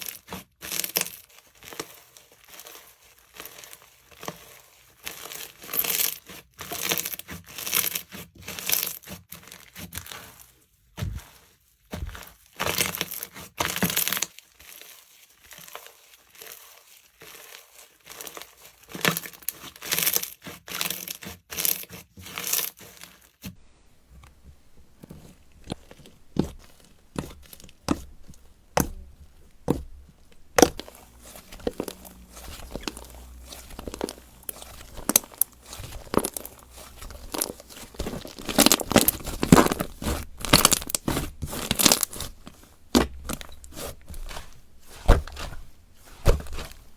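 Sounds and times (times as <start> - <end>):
slime squishing with sticky pops: 11.0 - 14.3, 24.3 - 46.9.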